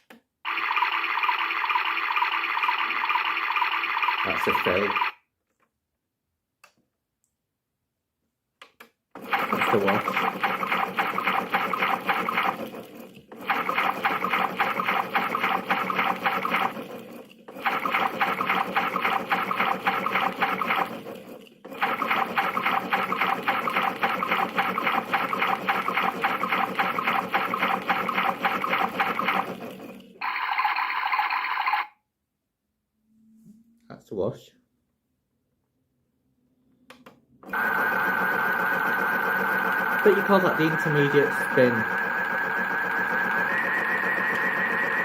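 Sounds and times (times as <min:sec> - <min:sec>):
toy water sloshing sound effect: 0:00.5 - 0:05.2, 0:09.2 - 0:31.9.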